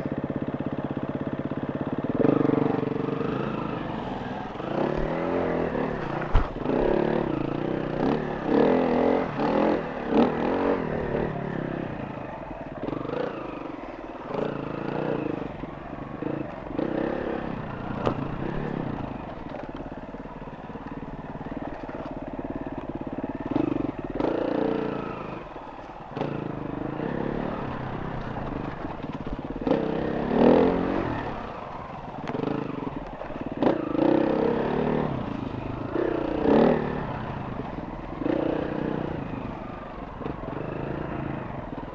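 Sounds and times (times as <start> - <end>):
dirt bike engine revving: 1.9 - 41.9.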